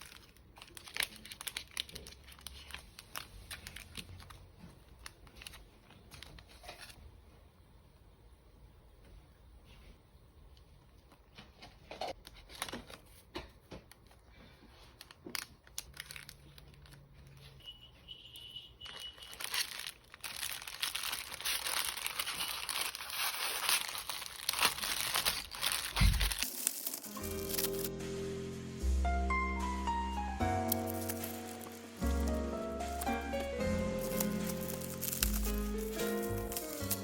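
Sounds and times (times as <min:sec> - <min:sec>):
wrapping crinkling and tearing: 0:00.0 - 0:07.0, 0:12.2 - 0:13.2, 0:13.9 - 0:17.7, 0:18.8 - 0:27.9, 0:30.5 - 0:37.0
packaging rustling and tapping: 0:18.9 - 0:27.8, 0:30.6 - 0:37.0.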